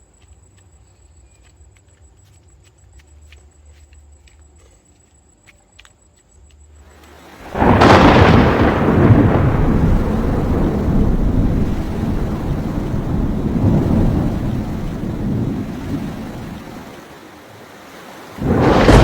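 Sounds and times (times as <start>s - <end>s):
thunder crack and rumble: 7.4s - 17.0s, 18.4s - 19.0s.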